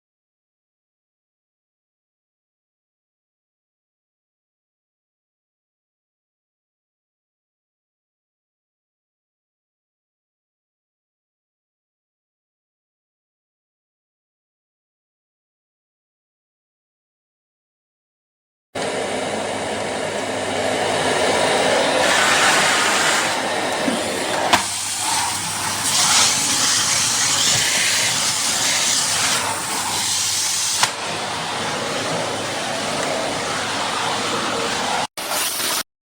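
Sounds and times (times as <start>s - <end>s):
vacuum cleaner running: 18.8s - 35.8s.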